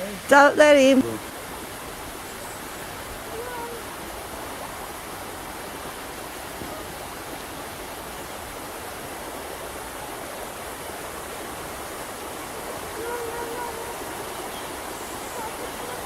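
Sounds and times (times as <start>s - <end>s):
small waterfall rushing: 0.0s - 16.0s.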